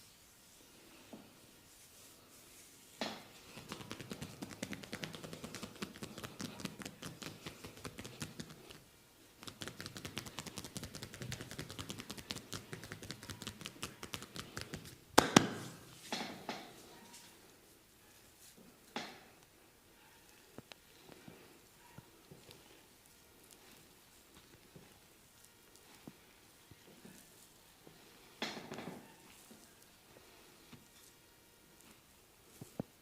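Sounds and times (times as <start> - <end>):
hands tapping rapidly on skin: 3.0 - 8.8, 9.4 - 15.6
loud sharp snaps: 9.4 - 15.6.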